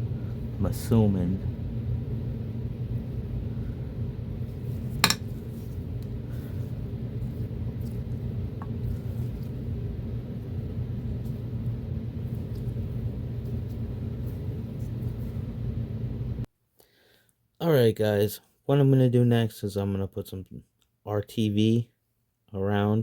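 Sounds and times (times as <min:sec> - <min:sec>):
steady low hum: 0:00.0 - 0:16.5.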